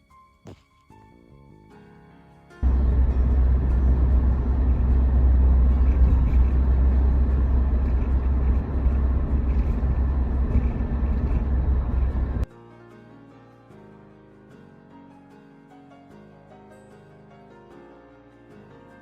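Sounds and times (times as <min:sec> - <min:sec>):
car engine and road noise: 0:02.6 - 0:12.5.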